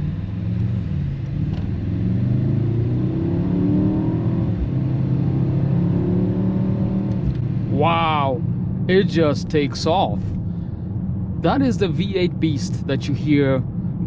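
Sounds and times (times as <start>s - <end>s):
car engine accelerating hard: 0.0s - 10.5s.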